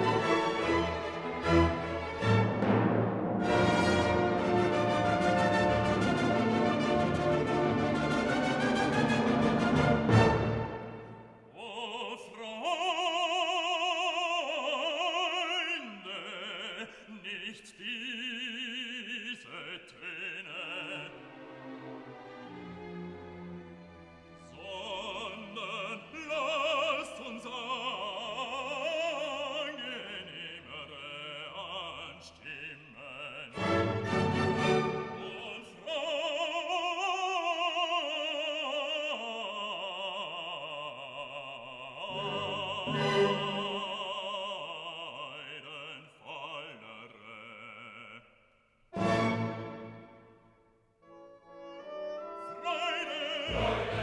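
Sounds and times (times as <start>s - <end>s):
operatic music with vibrato: 0.0s - 12.6s, 19.6s - 32.2s, 33.1s - 45.7s, 49.0s - 54.0s
operatic voice singing: 11.5s - 21.5s, 24.4s - 48.4s, 52.2s - 54.0s.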